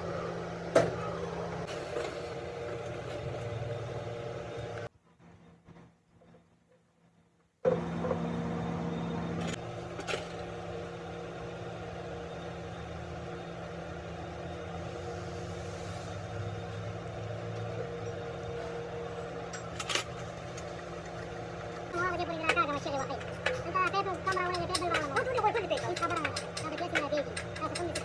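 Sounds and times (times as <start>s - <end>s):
heavy diesel engine running: 7.7s - 28.0s.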